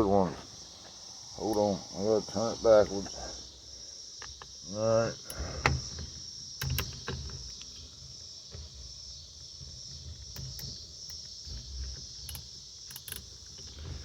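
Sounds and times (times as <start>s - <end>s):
crickets buzzing: 0.0s - 14.0s
wrench clicking and tapping: 12.2s - 13.6s.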